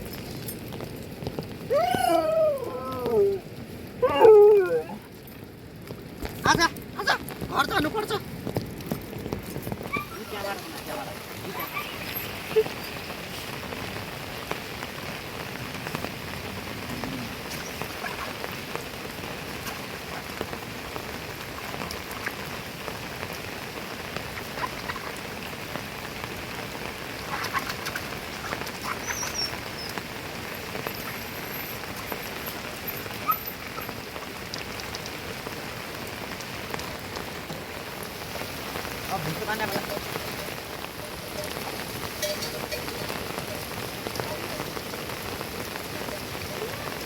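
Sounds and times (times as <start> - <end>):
steady rain hissing: 0.0 - 47.0.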